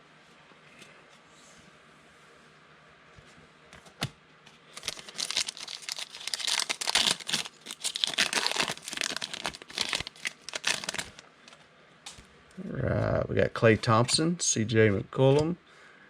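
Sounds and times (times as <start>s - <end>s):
wrapper torn and crinkled: 4.7s - 11.2s.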